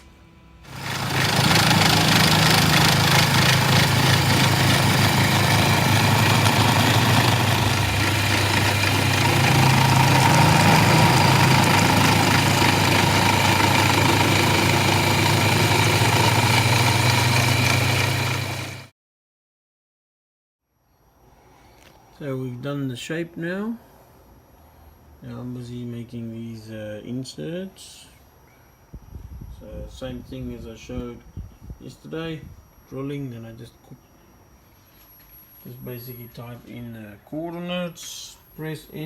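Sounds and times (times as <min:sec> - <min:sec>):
higher-pitched machine whine: 0:00.0 - 0:18.9, 0:28.1 - 0:39.0
milling machine running: 0:00.7 - 0:18.9.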